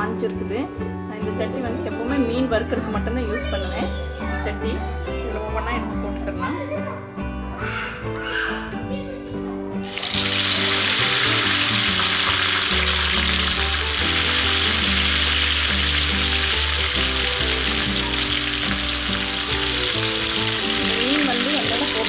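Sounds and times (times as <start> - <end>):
background music: 0.0 - 22.0
fish sizzling in hot oil: 9.8 - 22.0.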